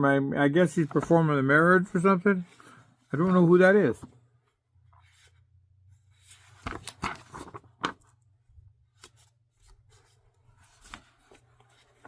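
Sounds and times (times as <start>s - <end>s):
paper rustling: 5.0s - 12.0s.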